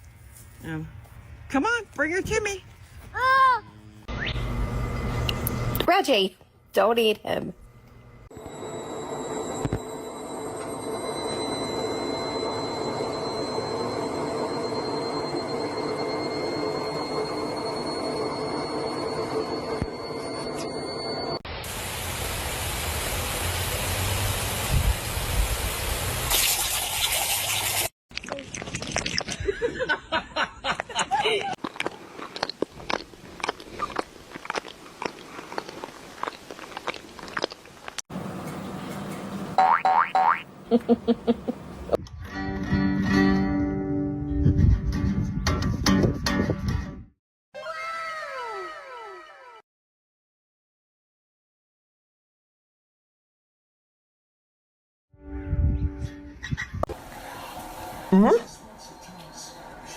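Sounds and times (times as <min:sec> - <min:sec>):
steady low hum: 0:03.6 - 0:21.4
faint high whine: 0:03.7 - 0:06.0, 0:07.6 - 0:21.4
mechanical running noise: 0:07.6 - 0:21.4
crunchy chewing: 0:28.1 - 0:29.5, 0:31.6 - 0:38.0.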